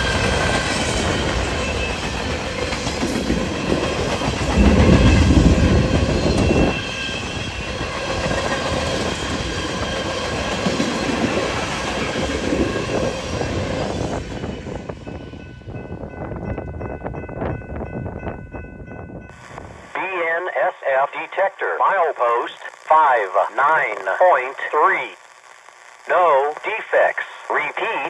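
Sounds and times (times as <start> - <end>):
train wheels clacking on rail: 0.0 - 18.4.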